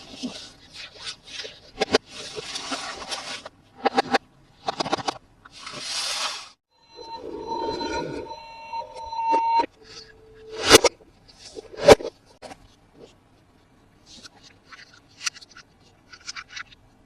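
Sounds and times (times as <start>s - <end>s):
toy electronic beeping: 6.8s - 10.7s.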